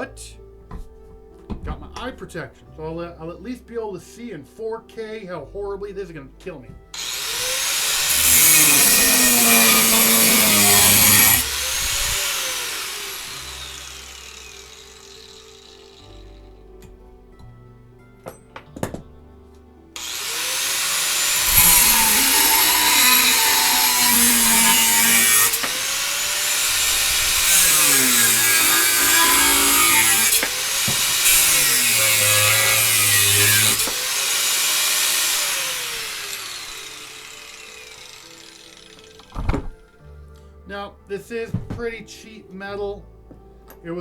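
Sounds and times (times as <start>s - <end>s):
grinder winding down whine: 7.0s - 16.2s, 20.0s - 39.3s
angle grinder cutting metal: 7.0s - 16.4s, 20.0s - 39.4s.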